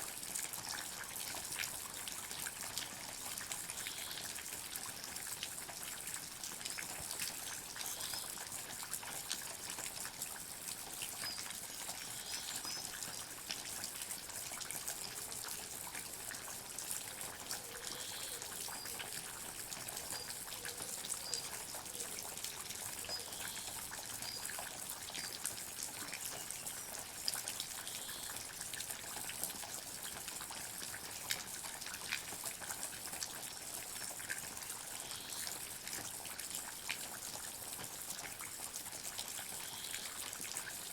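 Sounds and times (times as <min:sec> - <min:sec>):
water trickling: 0:00.6 - 0:40.9
water dripping: 0:11.0 - 0:40.9.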